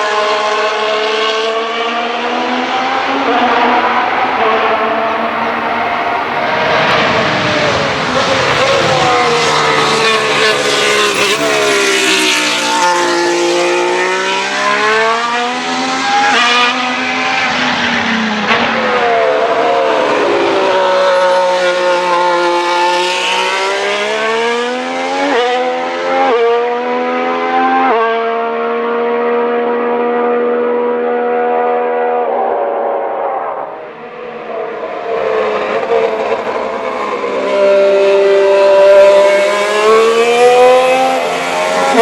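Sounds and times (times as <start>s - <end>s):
racing car engine: 0.0s - 42.0s
gear changes: 2.0s - 15.1s.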